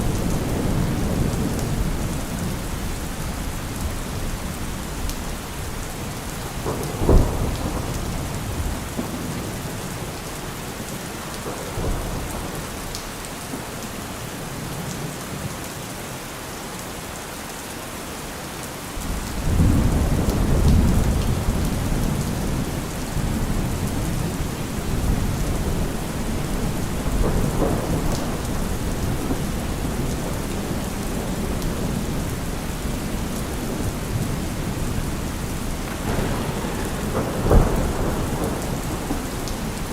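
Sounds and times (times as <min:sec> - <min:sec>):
rolling thunder rumble: 0:00.0 - 0:13.6, 0:19.0 - 0:39.9
heavy rain falling: 0:00.0 - 0:39.9
thunder crack: 0:06.4 - 0:10.1, 0:23.2 - 0:32.1, 0:33.1 - 0:39.9.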